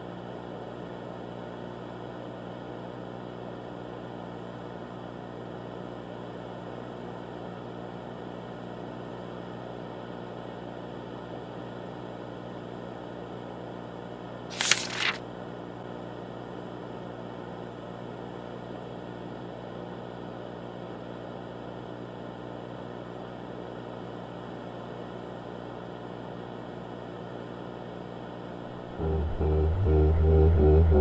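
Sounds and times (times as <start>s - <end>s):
static crackle: 14.5s - 15.2s
loud low droning: 28.7s - 31.0s.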